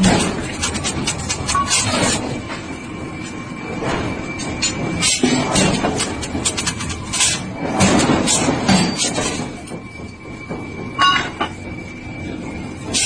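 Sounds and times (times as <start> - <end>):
thin steady squeal: 0.0 - 13.0
train running along track: 0.0 - 13.0.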